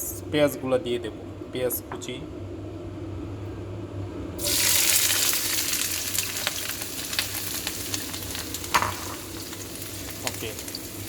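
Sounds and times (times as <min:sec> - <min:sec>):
onions sizzling in hot oil: 0:04.4 - 0:11.0.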